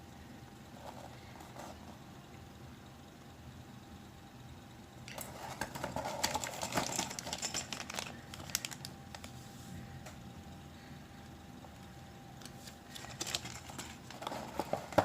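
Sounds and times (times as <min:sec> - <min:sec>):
packaging crinkling: 0:05.2 - 0:09.4, 0:12.6 - 0:15.0.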